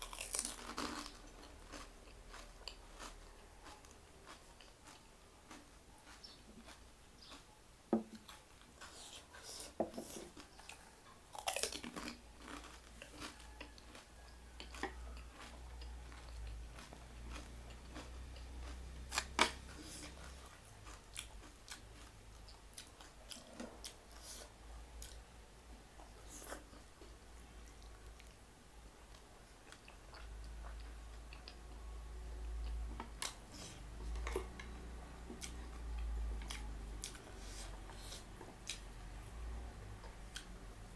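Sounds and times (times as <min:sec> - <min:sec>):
person chewing and biting: 0:00.0 - 0:07.5, 0:08.2 - 0:25.2.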